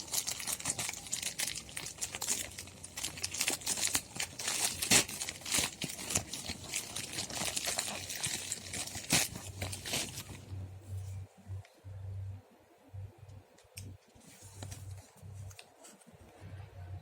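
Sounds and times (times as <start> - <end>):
packaging rustling and clicking: 0.0 - 10.4.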